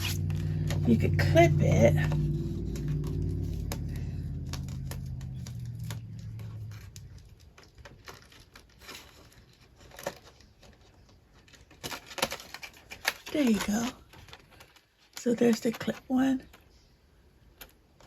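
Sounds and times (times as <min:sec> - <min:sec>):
low hum: 0:00.0 - 0:09.3.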